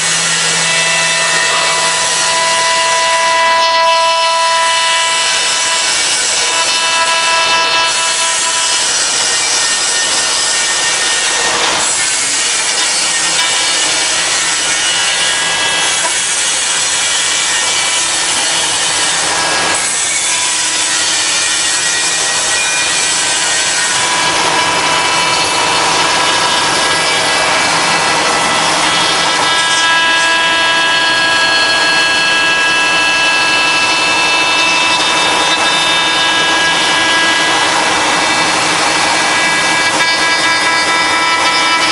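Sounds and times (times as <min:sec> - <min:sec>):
router cutting wood: 0:00.0 - 0:41.9
spindle whine: 0:00.0 - 0:41.9.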